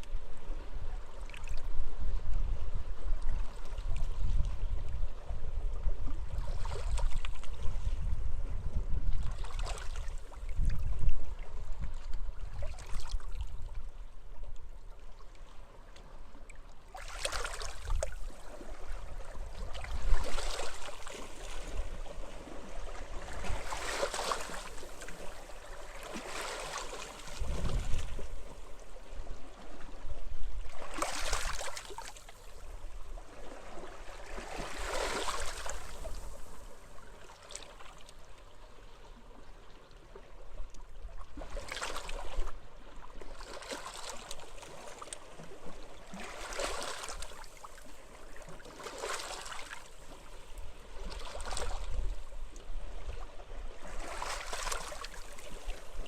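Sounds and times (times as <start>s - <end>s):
wind rumble: 27.4s - 28.2s.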